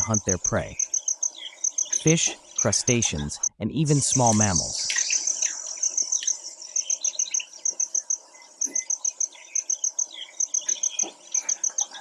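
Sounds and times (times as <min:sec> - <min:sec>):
insects chirping: 0:00.0 - 0:12.0
faint bird calls: 0:04.2 - 0:12.0.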